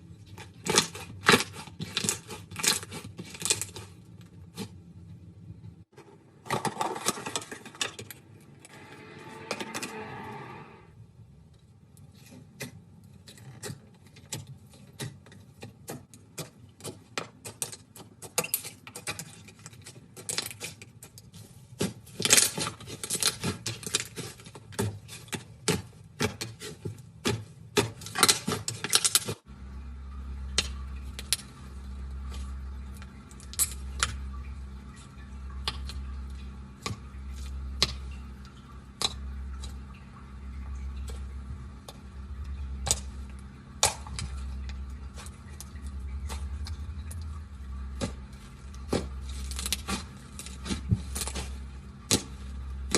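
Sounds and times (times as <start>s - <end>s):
low hum: 7.5s - 11.5s, 29.5s - 52.9s.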